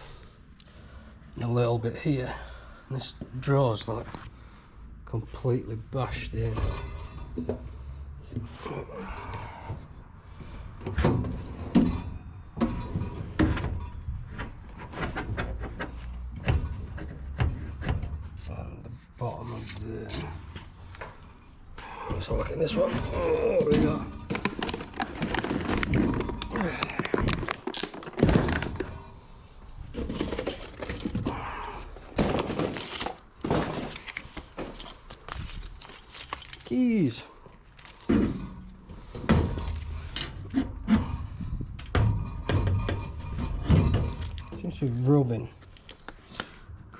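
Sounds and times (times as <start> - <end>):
metal drawers sliding: 29.9 - 36.6, 37.6 - 44.8
metal cabinet knocks and scrapes: 38.1 - 44.6.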